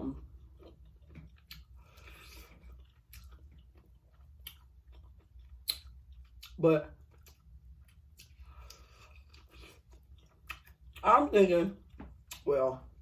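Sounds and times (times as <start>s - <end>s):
chewing: 0.2s - 11.0s
wet mouth clicks: 5.6s - 6.6s.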